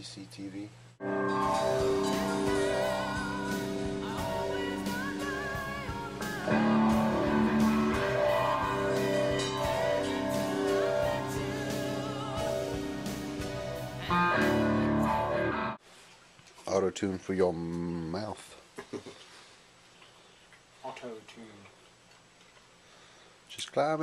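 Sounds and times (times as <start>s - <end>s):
rock music with electric guitar: 1.0s - 15.8s
steady drum beat: 1.4s - 14.8s.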